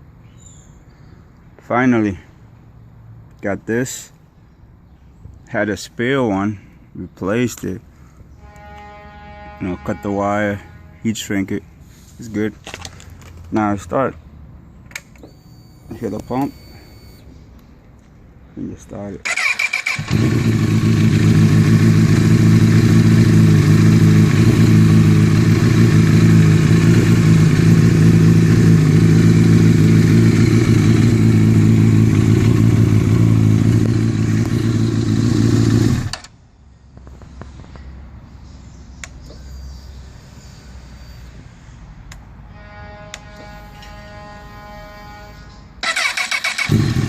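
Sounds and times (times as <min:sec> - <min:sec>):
motorcycle engine idling: 0:19.3 - 0:36.2, 0:45.8 - 0:47.0.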